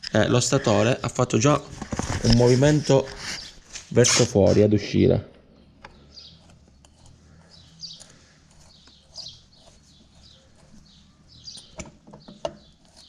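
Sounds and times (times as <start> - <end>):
faint high bird chirps: 7.3 - 13.0.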